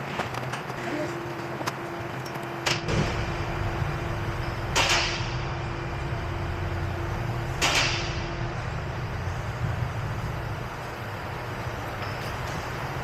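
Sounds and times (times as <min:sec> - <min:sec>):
low rumble: 0:02.9 - 0:11.8.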